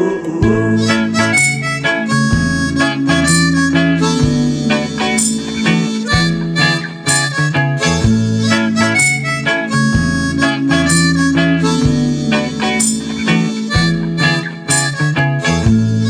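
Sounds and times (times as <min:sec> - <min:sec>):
reggae guitar and bass: 0:00.0 - 0:16.0
harmonica melody: 0:00.5 - 0:16.0.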